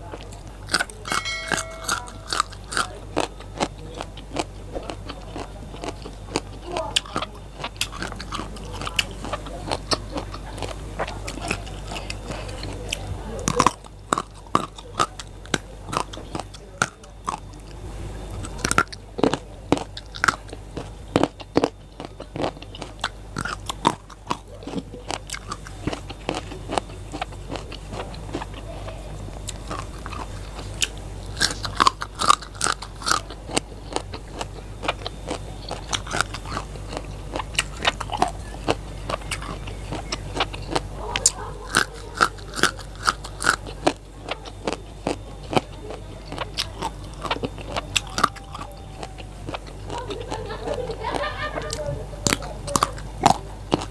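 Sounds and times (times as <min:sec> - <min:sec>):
crunching raw vegetables: 0:00.0 - 0:53.9.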